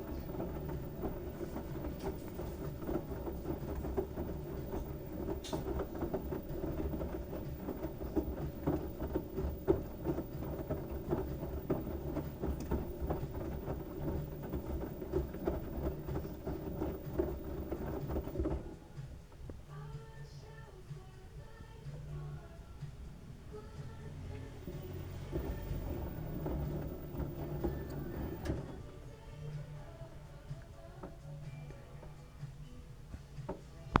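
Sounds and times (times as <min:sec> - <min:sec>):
clicking and pattering of towels: 0:00.0 - 0:20.0, 0:24.4 - 0:29.7, 0:33.1 - 0:34.0
washing machine rumbling: 0:00.0 - 0:34.0.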